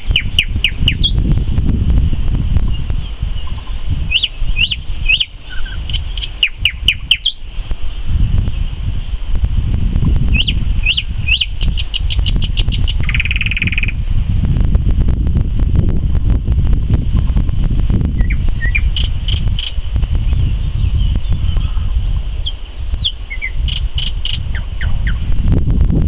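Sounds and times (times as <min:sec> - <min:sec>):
nightingale singing: 0:00.0 - 0:01.6, 0:02.6 - 0:14.2, 0:16.4 - 0:25.8
low rumble: 0:12.6 - 0:22.4.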